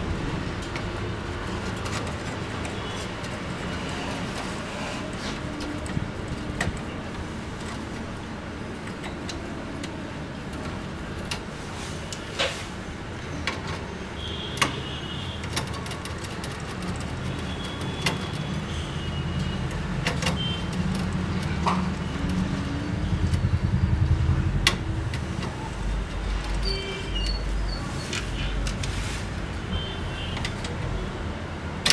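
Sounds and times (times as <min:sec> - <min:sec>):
road traffic rumble: 0:00.0 - 0:31.9
vehicle passing: 0:20.7 - 0:26.6.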